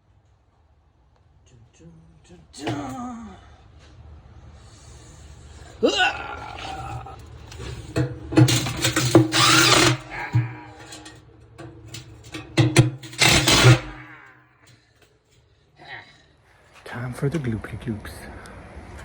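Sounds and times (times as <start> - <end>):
power drill running: 8.5 - 11.0, 13.0 - 14.1.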